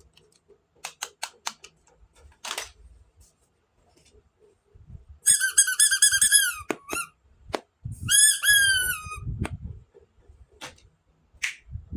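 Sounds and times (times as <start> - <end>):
sharp plastic clicks: 0.0 - 2.8
squeaky toy squeaks: 5.2 - 7.1, 8.0 - 9.3.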